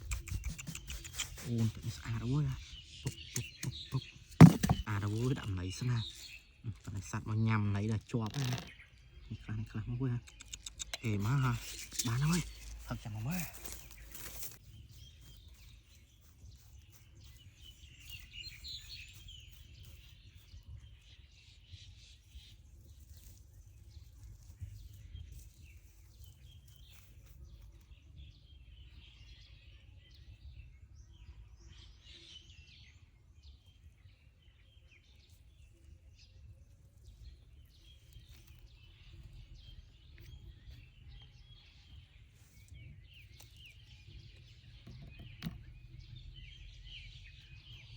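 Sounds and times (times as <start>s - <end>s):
small birds chirping: 0.0s - 47.9s.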